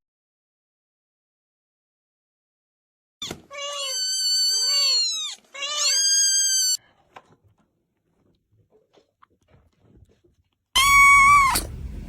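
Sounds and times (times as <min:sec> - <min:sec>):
cat meowing: 0:03.5 - 0:06.8, 0:10.8 - 0:11.7.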